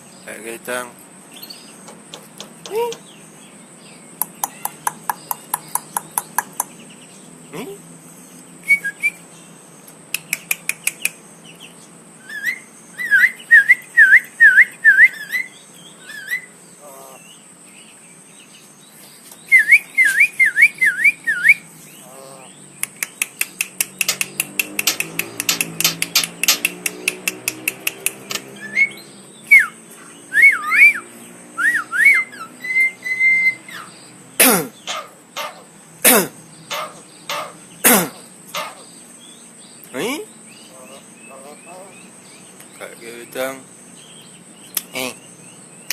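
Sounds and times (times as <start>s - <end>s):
bird fast clicks: 4.2s - 6.7s, 9.9s - 11.2s, 22.8s - 28.5s
bird warbling whistles: 12.3s - 16.5s, 28.6s - 33.9s
sharp downward-sweeping bird calls: 28.1s - 34.1s, 36.6s - 42.5s.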